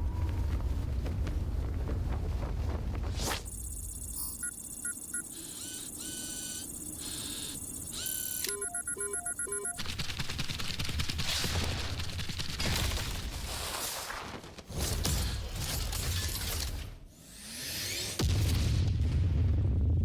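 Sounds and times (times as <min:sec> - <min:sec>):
electronic beeps and tones: 0:03.9 - 0:09.8.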